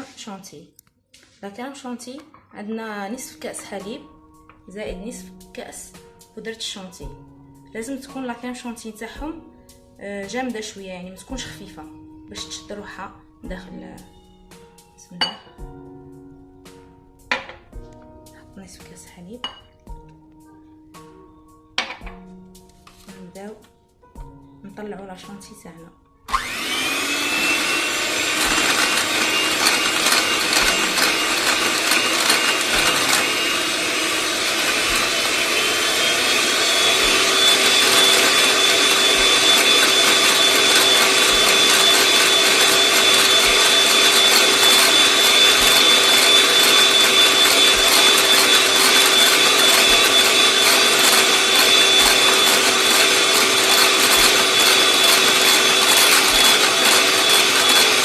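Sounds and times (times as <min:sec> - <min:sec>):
electric mixer whining: 0:26.3 - 0:58.0.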